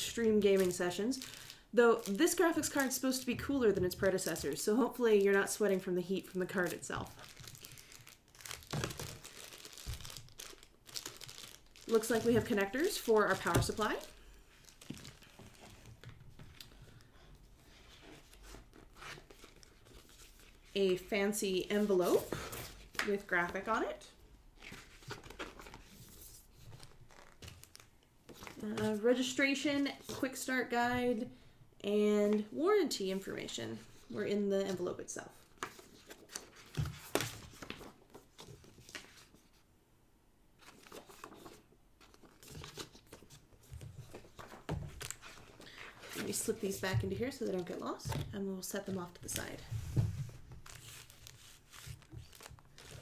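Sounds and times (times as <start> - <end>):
packaging rustling and tapping: 7.2 - 16.8
paper rustling: 24.6 - 29.0, 35.6 - 39.6, 40.6 - 47.8, 49.2 - 53.0.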